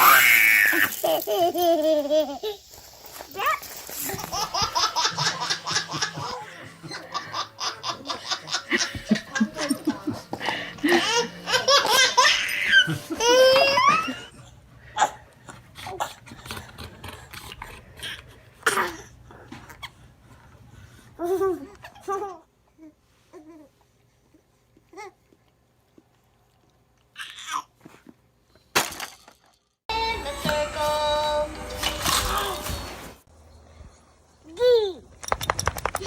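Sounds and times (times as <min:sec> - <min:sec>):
baby laughing and squealing: 0:00.0 - 0:02.7, 0:10.9 - 0:14.3.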